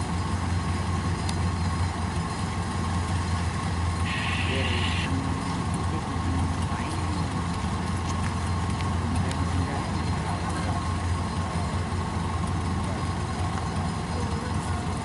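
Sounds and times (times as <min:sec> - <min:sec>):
combine harvester engine running: 0:00.0 - 0:15.0
thin steady whine: 0:00.0 - 0:15.0.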